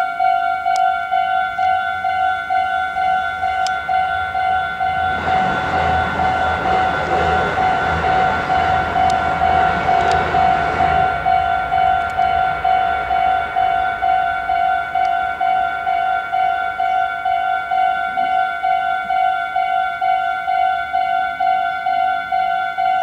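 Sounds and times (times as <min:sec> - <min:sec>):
level crossing warning bell: 0:00.0 - 0:23.0
train wheels on rails: 0:01.0 - 0:18.4.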